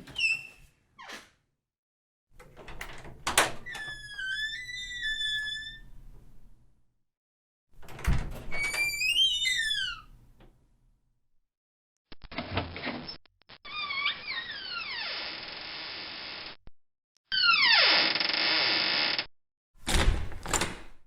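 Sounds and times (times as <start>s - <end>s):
door hinge creaking: 2.4s - 6.0s, 7.8s - 10.5s, 13.7s - 15.3s.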